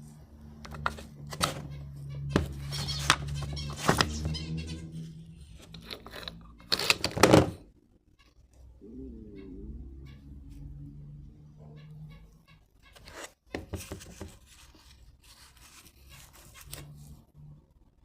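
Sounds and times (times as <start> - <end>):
parts clicking and knocking: 5.6 - 7.6.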